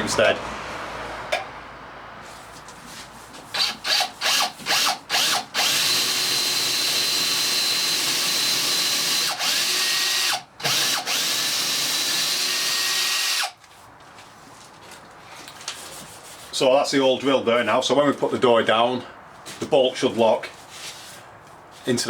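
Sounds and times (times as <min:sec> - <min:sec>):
power drill boring into wood: 0:03.6 - 0:13.6.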